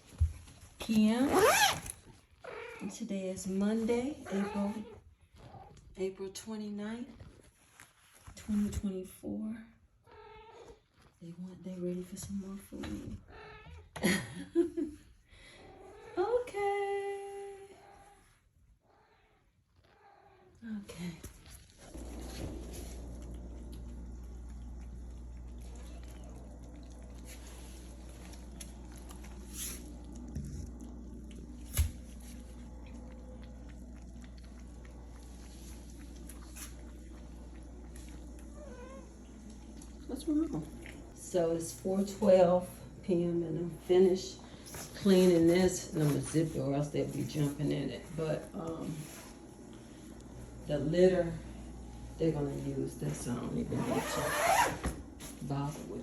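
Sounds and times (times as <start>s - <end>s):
kittens chewing: 21.2s - 52.2s
steady low hum: 21.8s - 56.0s.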